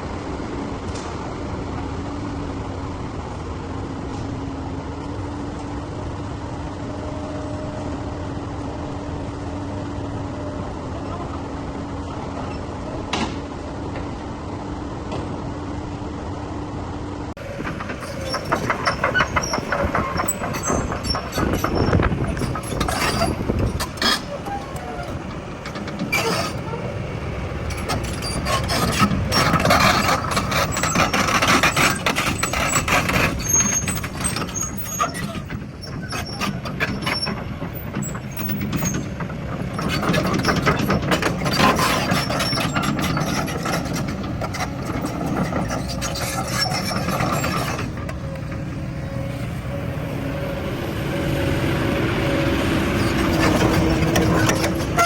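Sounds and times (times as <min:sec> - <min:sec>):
diesel engines running under load: 0:00.0 - 0:55.0
metal knocks and clanks: 0:17.4 - 0:48.7.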